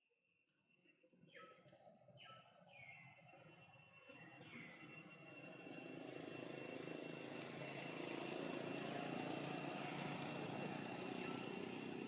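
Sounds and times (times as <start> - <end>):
distant engine drone: 4.0 - 12.0.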